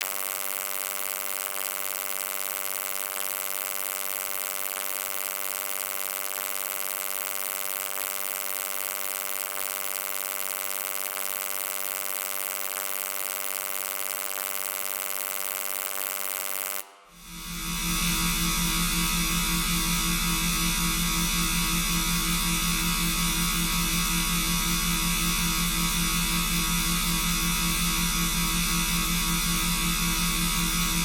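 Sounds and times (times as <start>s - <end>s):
electrical buzzing: 17.0s - 31.0s.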